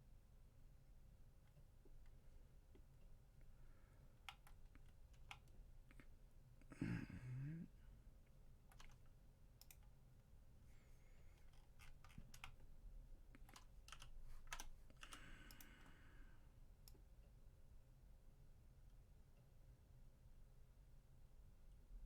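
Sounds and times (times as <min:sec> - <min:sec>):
low room hum: 0:00.0 - 0:22.0
keyboard and mouse clicking: 0:04.2 - 0:06.0, 0:08.7 - 0:09.9, 0:11.4 - 0:12.7, 0:13.4 - 0:15.8.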